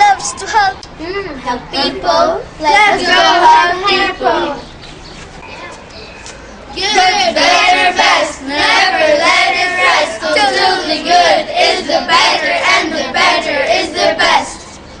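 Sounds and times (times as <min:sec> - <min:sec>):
children singing: 0:01.7 - 0:04.7, 0:06.8 - 0:14.7.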